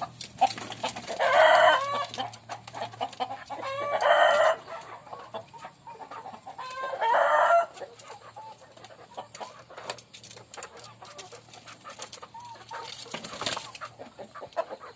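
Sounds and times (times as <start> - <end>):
chickens clucking softly: 0.0 - 14.9
rooster crowing: 3.6 - 4.6, 6.8 - 7.7.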